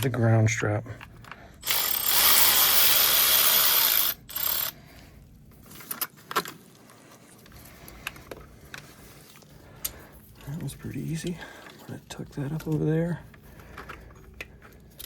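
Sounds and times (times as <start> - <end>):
power tool spinning a socket: 1.6 - 4.8.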